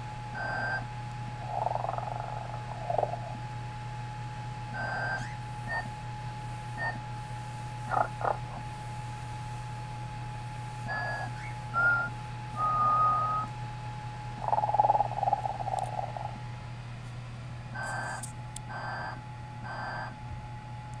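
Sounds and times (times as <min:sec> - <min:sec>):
electronic toy snoring: 0:00.4 - 0:00.8, 0:01.4 - 0:03.4, 0:04.8 - 0:05.3, 0:07.9 - 0:08.6, 0:14.4 - 0:16.4
low hum: 0:00.4 - 0:16.9.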